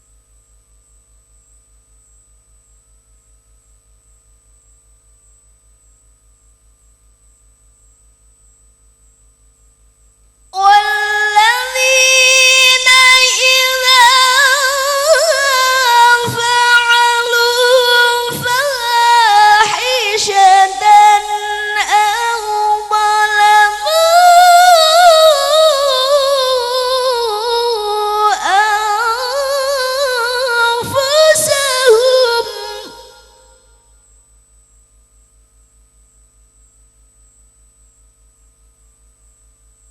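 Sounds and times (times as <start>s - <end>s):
person reciting melodically: 10.6s - 33.5s.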